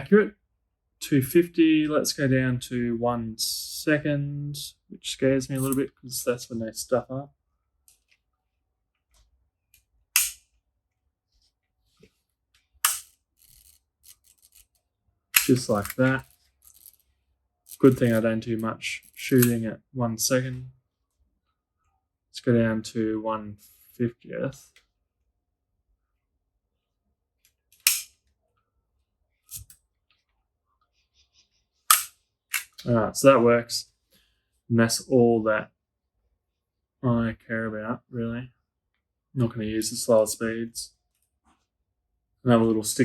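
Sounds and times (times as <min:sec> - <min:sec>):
faint handling clicks: 0:15.4 - 0:17.0.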